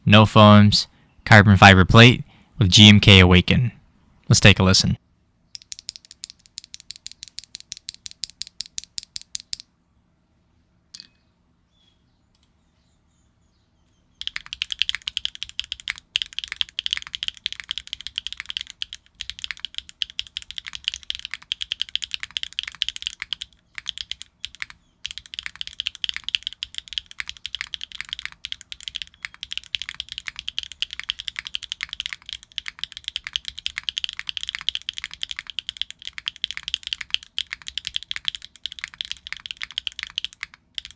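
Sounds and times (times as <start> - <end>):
mechanical keyboard typing: 5.6 - 9.6, 14.2 - 40.9.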